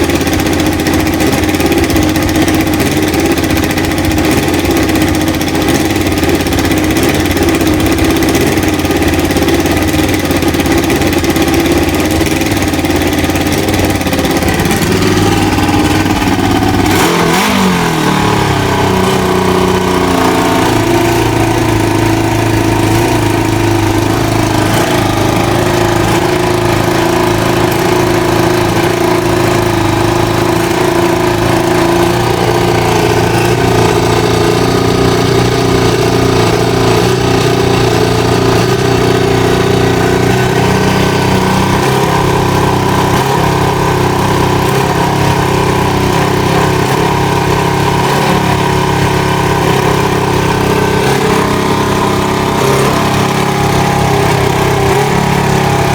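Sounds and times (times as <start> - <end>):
motorcycle engine idling: 0.0 - 55.9.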